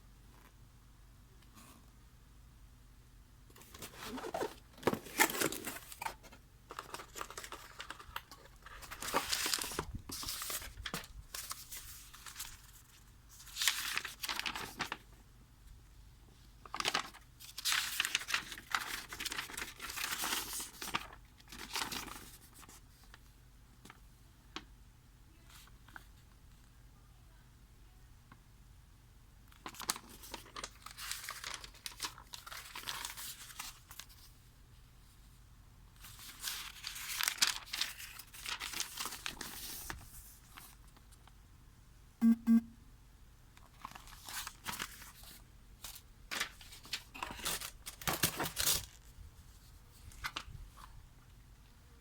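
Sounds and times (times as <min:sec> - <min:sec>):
packaging crinkling and tearing: 0:03.6 - 0:12.8, 0:13.4 - 0:15.0, 0:16.7 - 0:22.6, 0:29.5 - 0:34.1, 0:36.1 - 0:40.0, 0:43.7 - 0:49.1
short buzzy tone: 0:42.2 - 0:42.9.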